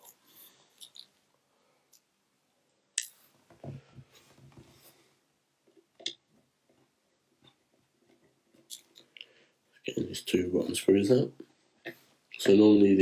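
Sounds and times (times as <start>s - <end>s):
soft scraping and handling: 3.2s - 5.2s.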